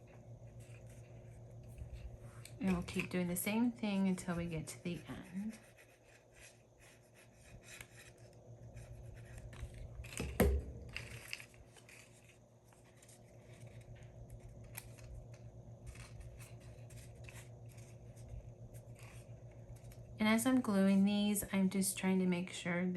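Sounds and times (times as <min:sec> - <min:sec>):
paper pages rustling and rubbing: 0:00.0 - 0:10.3, 0:10.9 - 0:20.1.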